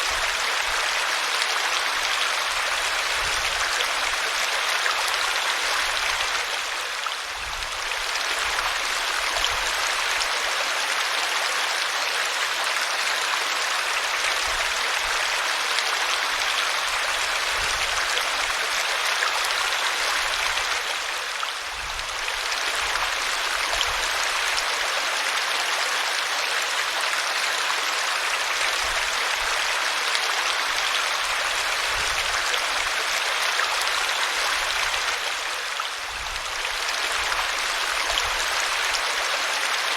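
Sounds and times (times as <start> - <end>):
small waterfall splashing: 0.0 - 39.9.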